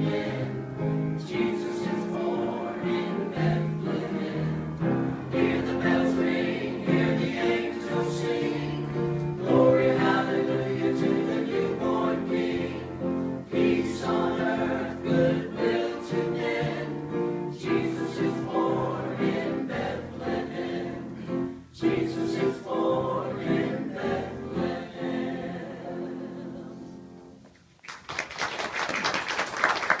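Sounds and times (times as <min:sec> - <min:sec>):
choir singing gospel: 0:00.0 - 0:27.4
applause: 0:27.8 - 0:30.0.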